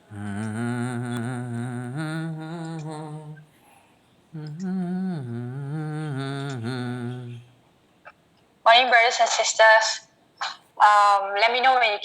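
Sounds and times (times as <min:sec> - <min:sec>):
person humming: 0:00.0 - 0:03.5, 0:04.3 - 0:07.6.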